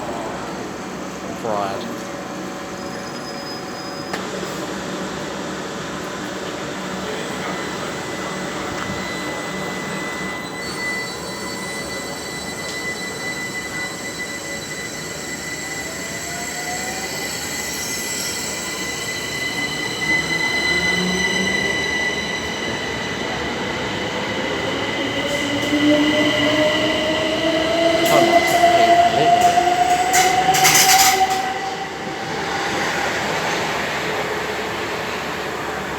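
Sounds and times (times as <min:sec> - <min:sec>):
electric train whine: 0:00.0 - 0:35.9
train motor tones rising: 0:14.1 - 0:34.1.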